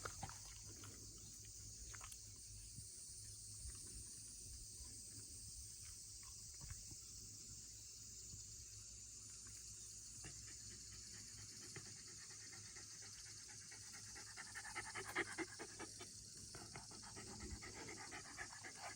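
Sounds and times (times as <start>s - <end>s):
dog panting: 10.2s - 18.9s.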